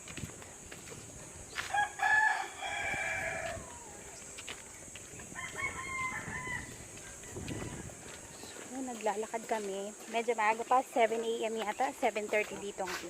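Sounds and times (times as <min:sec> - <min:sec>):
rooster crowing: 0:01.6 - 0:04.2, 0:05.2 - 0:08.5.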